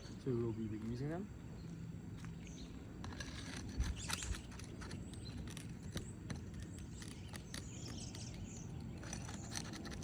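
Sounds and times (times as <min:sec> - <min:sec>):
light scraping: 0:03.0 - 0:10.0.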